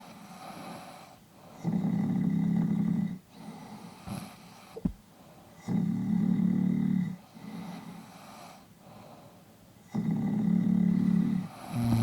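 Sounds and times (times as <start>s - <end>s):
soft snoring and breathing: 0.0s - 12.0s
loud low buzzing snores: 1.6s - 3.2s, 5.6s - 8.3s, 9.8s - 12.0s.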